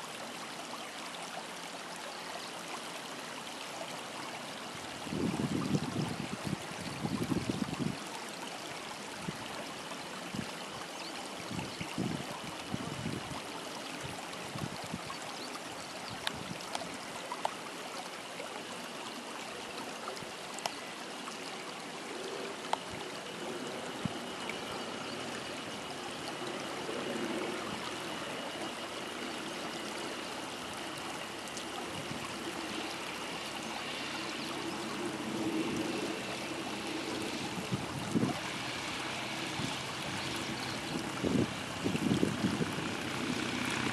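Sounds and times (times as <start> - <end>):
running water: 0.0 - 43.9
wind buffeting microphone: 5.0 - 8.0, 35.1 - 43.9.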